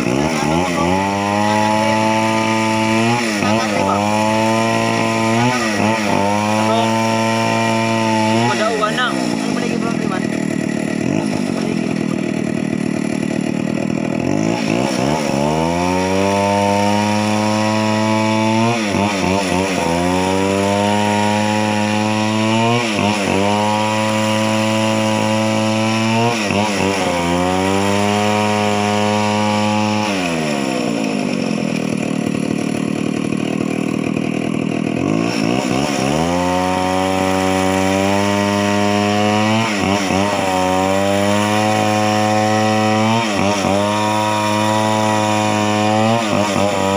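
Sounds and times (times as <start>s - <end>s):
chainsaw engine revving: 0.0s - 46.9s.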